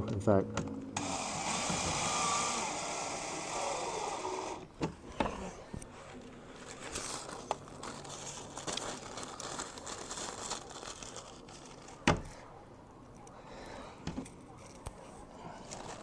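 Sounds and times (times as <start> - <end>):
crinkly handling rustle: 5.7 - 13.3, 14.2 - 16.0.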